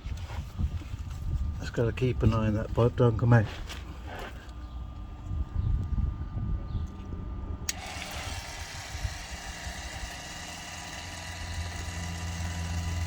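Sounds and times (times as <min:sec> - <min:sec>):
oil pump running: 0:07.7 - 0:13.0
pump clicking on: 0:07.7 - 0:13.0.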